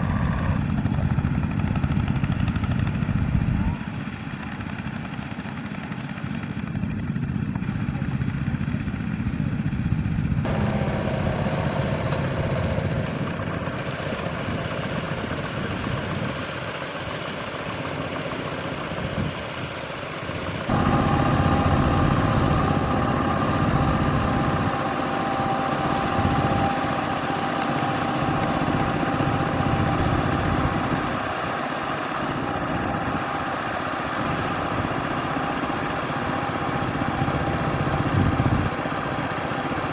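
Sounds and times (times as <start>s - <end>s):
tractor engine under load: 10.2s - 16.4s, 20.7s - 39.6s.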